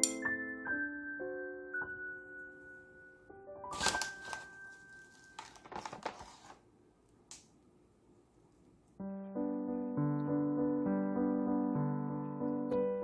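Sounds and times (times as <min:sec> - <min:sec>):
soft piano music: 0:00.0 - 0:05.6, 0:09.0 - 0:13.0
kitchen noise: 0:03.7 - 0:06.6.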